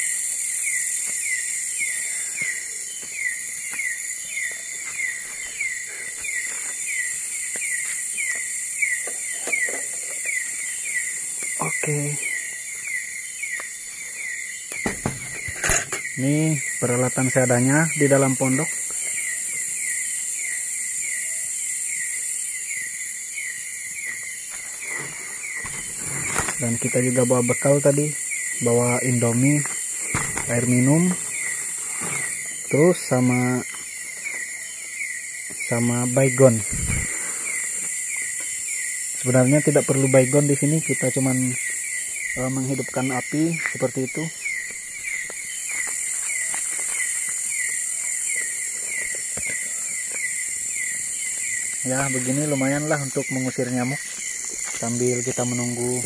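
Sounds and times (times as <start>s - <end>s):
falling insect chirp: 0.0s - 56.0s
insect chorus shrill: 0.0s - 56.0s
short falling insect chirp: 29.5s - 32.9s.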